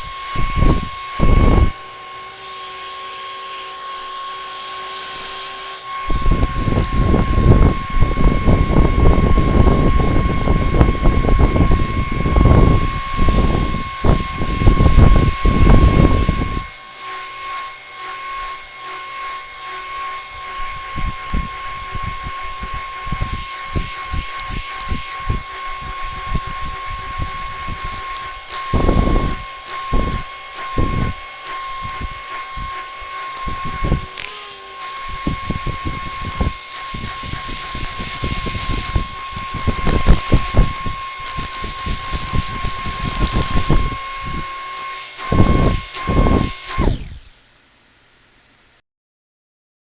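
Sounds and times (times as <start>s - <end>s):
small electric motor whining: 0.0s - 47.6s
wind buffeting microphone: 6.1s - 16.7s.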